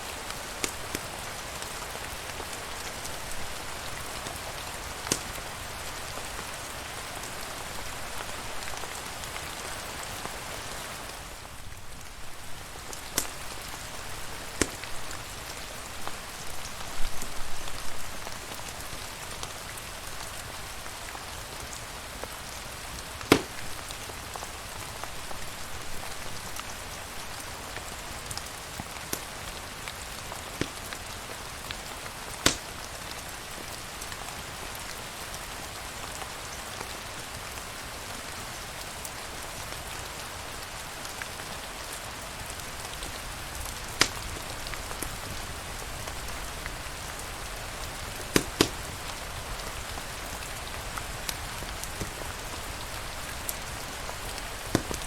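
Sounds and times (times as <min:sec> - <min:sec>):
steady rain falling: 0:00.0 - 0:55.0
sharp pops: 0:05.0 - 0:05.3, 0:23.3 - 0:23.8, 0:32.4 - 0:32.7, 0:44.0 - 0:44.4, 0:48.3 - 0:48.9, 0:54.7 - 0:55.0.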